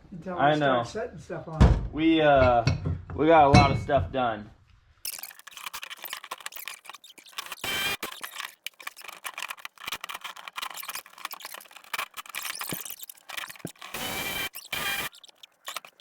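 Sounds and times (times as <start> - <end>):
tools and metal parts clattering: 5.1 - 16.0.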